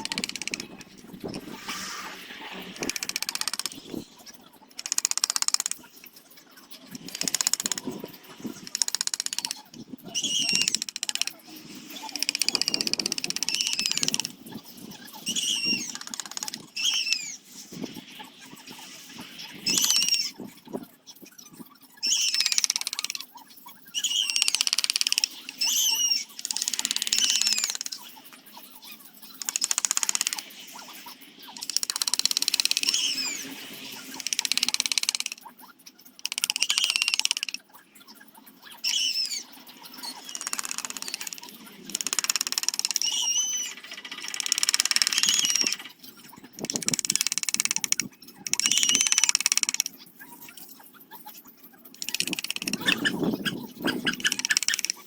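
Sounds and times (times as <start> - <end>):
wood scraping strokes: 0.0 - 4.2.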